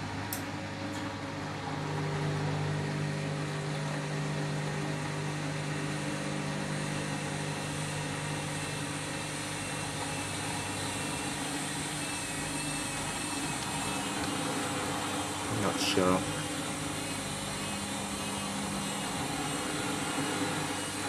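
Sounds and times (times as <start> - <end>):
faint motor whine: 0.0 - 21.0
washing machine spinning: 0.0 - 21.0.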